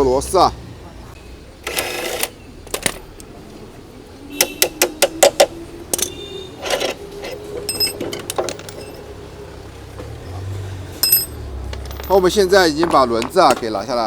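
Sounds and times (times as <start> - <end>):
metal tools clicking: 4.6 - 9.2, 11.0 - 13.7
ringing metallic clinks: 5.9 - 9.2, 11.0 - 12.4.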